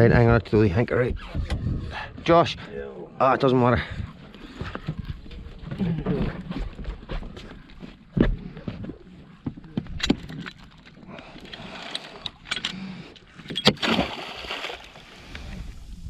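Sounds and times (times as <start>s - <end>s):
wind and water rushing: 13.8s - 16.0s.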